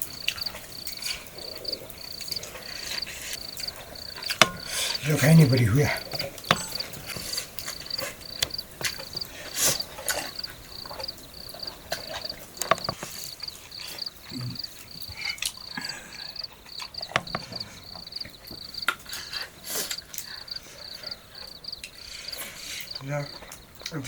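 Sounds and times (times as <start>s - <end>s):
insect chirping: 0.0s - 24.0s
sharp clicks and knocks: 4.2s - 4.7s, 6.1s - 9.3s, 11.9s - 13.2s, 17.0s - 17.6s.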